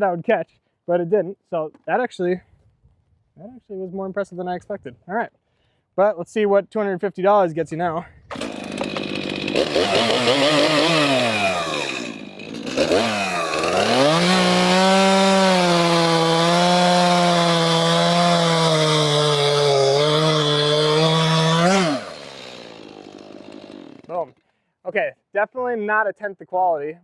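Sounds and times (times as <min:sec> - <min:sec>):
chainsaw cutting wood: 0:08.3 - 0:24.3.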